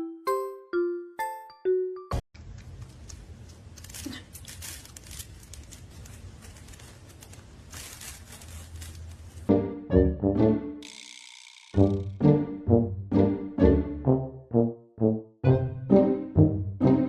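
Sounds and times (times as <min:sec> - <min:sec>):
crinkling handling noise: 0:02.4 - 0:09.5.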